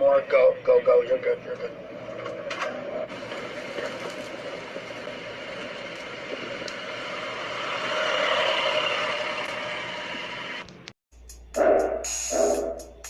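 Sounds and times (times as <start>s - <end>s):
car driving: 1.7s - 10.8s.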